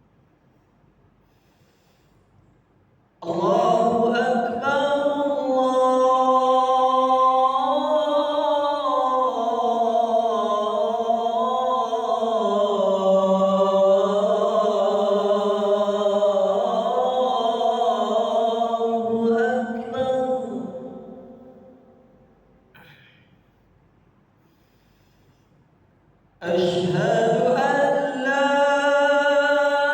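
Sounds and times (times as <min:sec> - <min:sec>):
man singing call to prayer: 0:03.2 - 0:21.8, 0:26.4 - 0:29.9.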